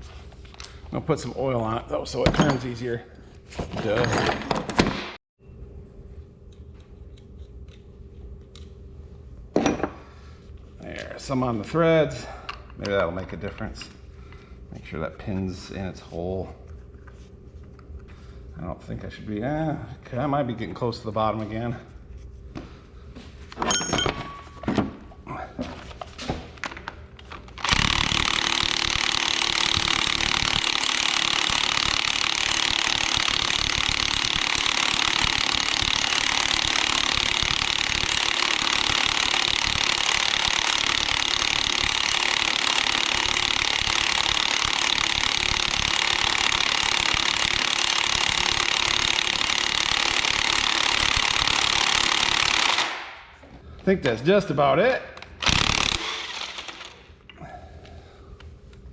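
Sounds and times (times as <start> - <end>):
tool clinks: 23.6 - 24.8
impact wrench hammering: 27.6 - 53.3, 55.4 - 57.1.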